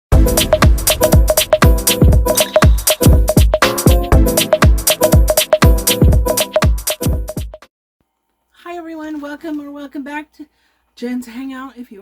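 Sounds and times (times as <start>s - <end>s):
electronic dance music: 0.1s - 7.6s.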